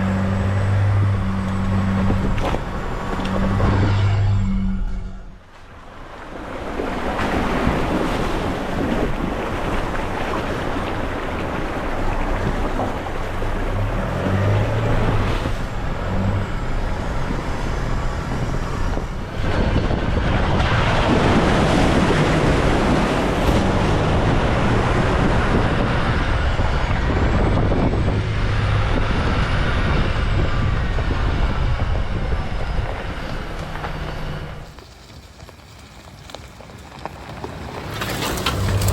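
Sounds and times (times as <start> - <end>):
vehicle engine under load: 0.0 - 5.8, 8.5 - 38.9
water splashing: 5.5 - 25.6.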